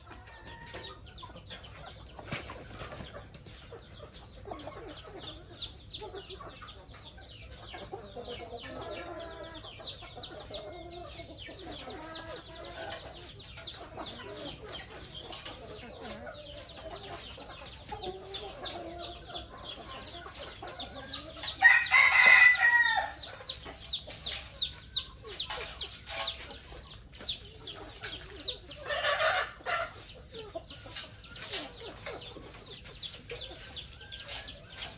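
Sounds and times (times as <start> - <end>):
chickens clucking: 0.0 - 34.9
rooster crowing: 21.6 - 23.2.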